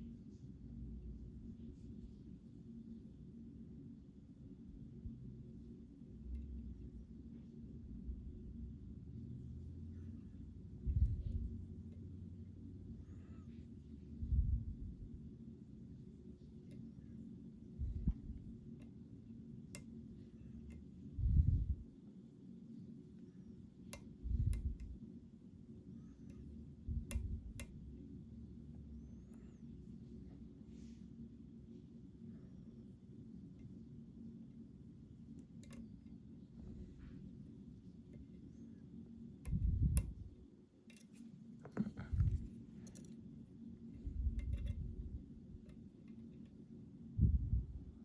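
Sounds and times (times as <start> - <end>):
lock pick clicks: 35.4 - 35.9, 40.9 - 41.3, 42.3 - 43.2, 44.4 - 44.8.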